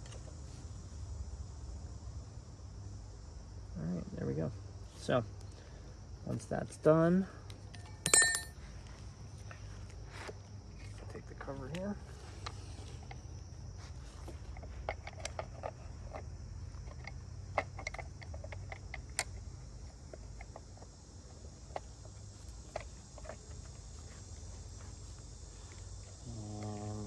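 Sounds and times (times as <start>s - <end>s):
insects chirping: 0.0s - 27.0s
light clicks and knocks of metal parts: 6.3s - 21.0s.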